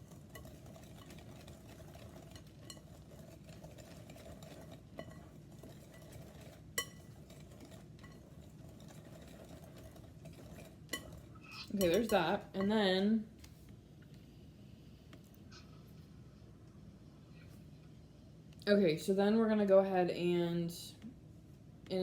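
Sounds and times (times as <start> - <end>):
whisk clinking against bowl: 0.0 - 12.9
whisk scraping in bowl: 0.0 - 12.9.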